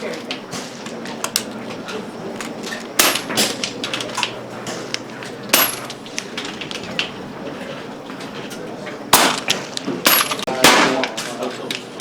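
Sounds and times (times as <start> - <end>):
air rifles firing: 2.9 - 7.3, 9.1 - 11.5.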